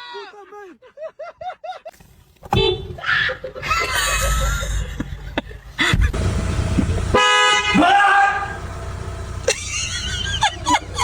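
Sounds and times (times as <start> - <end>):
person laughing: 3.1 - 6.2, 9.4 - 11.0
loud low rumbling: 6.1 - 11.0.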